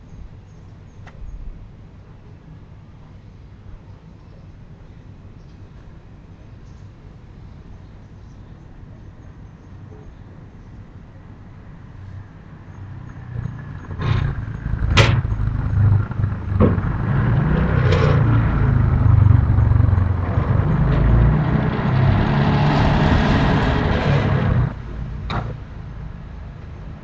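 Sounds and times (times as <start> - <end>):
loud low rumble: 13.2 - 26.4
sharp knocks or clicks: 13.9 - 19.1.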